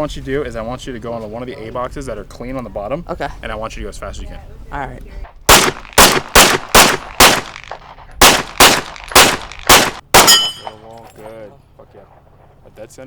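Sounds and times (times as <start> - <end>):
pistol shots: 5.5 - 10.8
brief metallic ring: 10.3 - 10.8.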